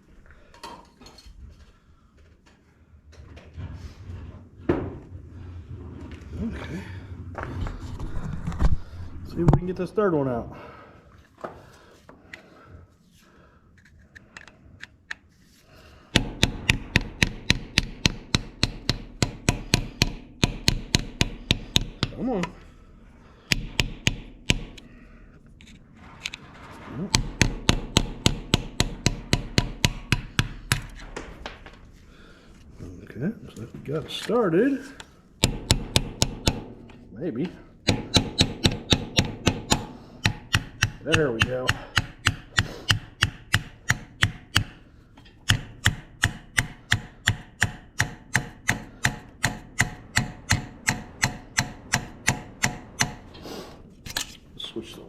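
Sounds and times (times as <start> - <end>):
hammer striking screwdriver: 16.2 - 22.2, 37.8 - 44.8, 45.4 - 53.3.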